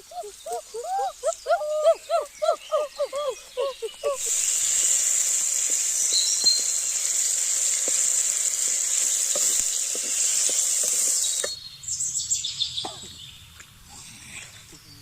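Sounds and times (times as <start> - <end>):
food sizzling in hot oil: 4.1 - 11.6.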